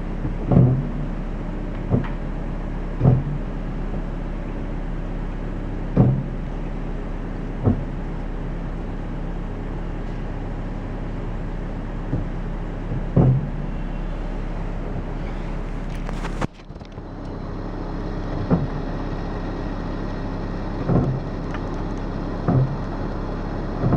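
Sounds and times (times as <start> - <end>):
car driving with low drone: 0.0 - 23.9
low-pitched brake creaks: 11.2 - 17.4.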